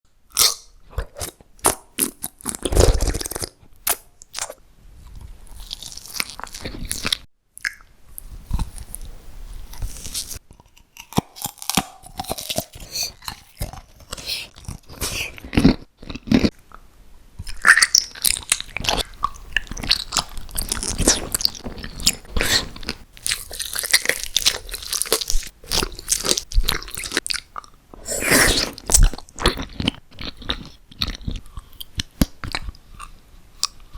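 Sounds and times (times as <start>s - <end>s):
crisp bites and crunching: 0.4s - 4.6s, 5.5s - 7.8s, 9.7s - 16.5s, 17.5s - 32.7s
wet chewing clicks: 17.5s - 33.9s.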